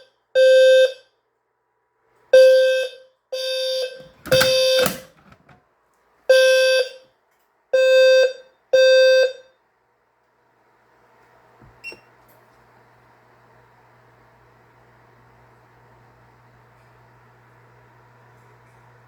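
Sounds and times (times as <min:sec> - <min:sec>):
fire alarm horn blasts: 0:00.0 - 0:01.2, 0:02.4 - 0:05.2, 0:06.3 - 0:07.1, 0:07.8 - 0:09.5.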